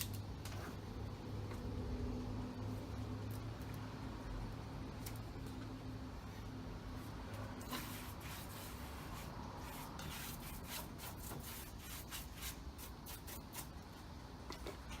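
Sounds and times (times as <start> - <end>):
rubbing strokes against surface: 7.7 - 13.7.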